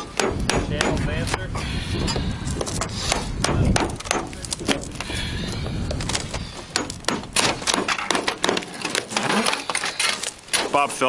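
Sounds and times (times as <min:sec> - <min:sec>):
hammer and pry-bar knocks on roof: 0:06.8 - 0:09.2.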